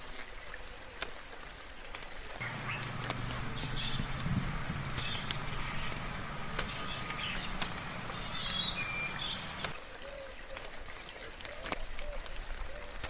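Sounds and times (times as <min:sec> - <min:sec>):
rain hiss: 0:00.0 - 0:13.0
drip-like ticks: 0:01.0 - 0:09.8
low hum: 0:02.4 - 0:09.7
birds chirping and warbling: 0:02.4 - 0:09.8.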